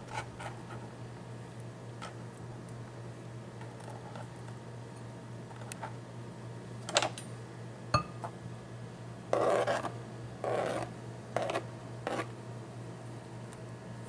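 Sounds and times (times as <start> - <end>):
ringing knock on bowl: 8.0 - 8.2
scraping in a bowl: 9.3 - 12.3.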